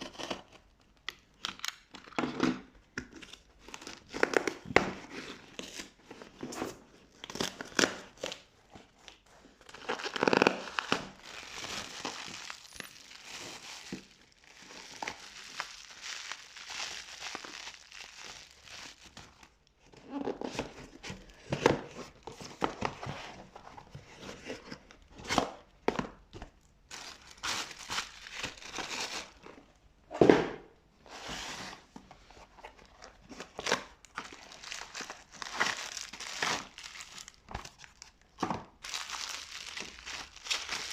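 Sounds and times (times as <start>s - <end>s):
packaging crinkling and rustling: 3.2s - 25.7s, 26.6s - 29.7s, 32.2s - 40.9s
packaging tearing: 9.7s - 19.4s, 33.4s - 38.2s, 38.8s - 40.9s.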